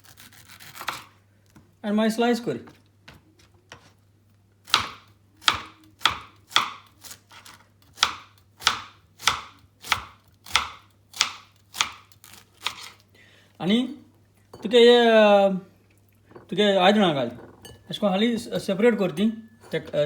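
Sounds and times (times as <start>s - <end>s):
knife slicing pineapple: 0.0s - 1.2s, 4.7s - 13.0s.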